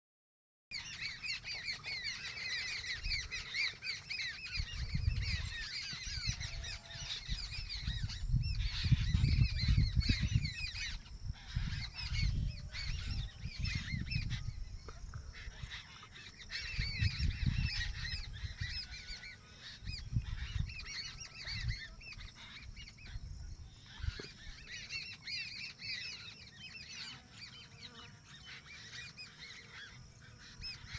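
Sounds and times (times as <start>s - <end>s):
flock of birds calling: 0.7s - 30.9s
low rumbles on microphone: 7.3s - 15.7s.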